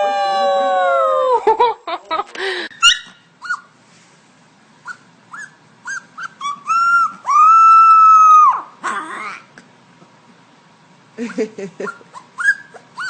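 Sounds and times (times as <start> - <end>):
puppy howling: 0.0 - 1.4, 5.3 - 9.5
puppy yipping and yelping: 2.8 - 3.8, 4.8 - 9.5, 11.8 - 13.0.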